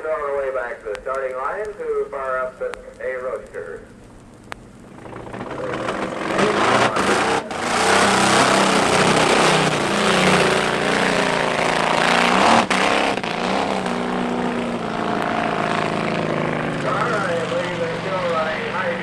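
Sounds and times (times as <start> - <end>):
car engine revving hard: 5.0 - 19.0.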